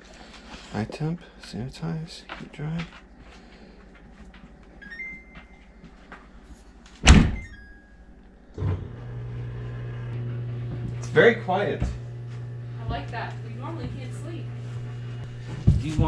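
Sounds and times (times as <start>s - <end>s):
dishwasher door thump: 7.0s - 7.5s
dishwasher humming: 7.0s - 16.0s.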